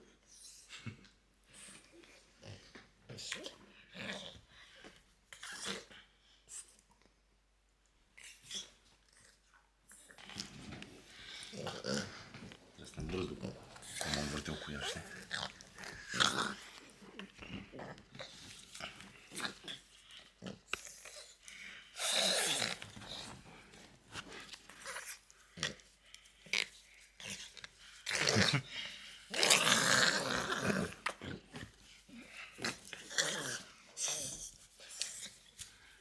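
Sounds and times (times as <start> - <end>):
dog snorting and wheezing: 10.0 - 36.0.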